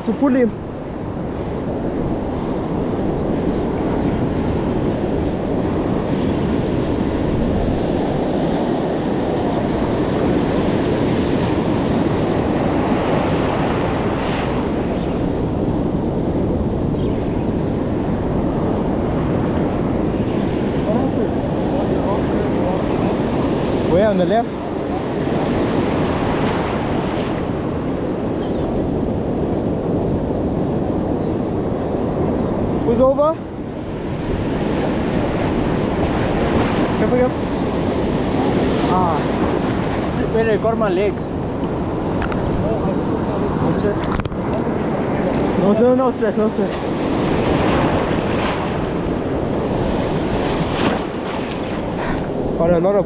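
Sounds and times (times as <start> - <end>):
sea surf washing on rocks: 0.0 - 53.0
wind buffeting microphone: 0.0 - 53.0.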